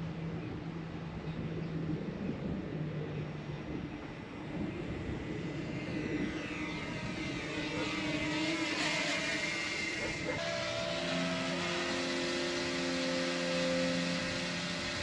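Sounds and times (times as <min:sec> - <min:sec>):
small aircraft propeller whine: 0:00.0 - 0:15.0.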